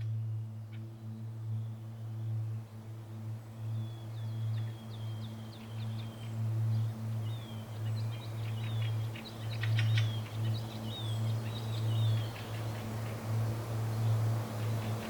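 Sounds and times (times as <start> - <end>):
low steady drone: 0.0 - 15.0
small songbirds chirping: 0.0 - 15.0.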